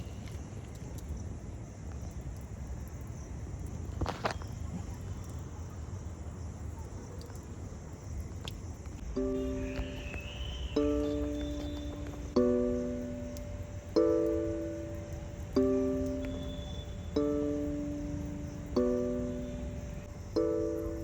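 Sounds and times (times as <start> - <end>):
rustle: 0.0 - 15.0
high insect drone: 8.0 - 21.0.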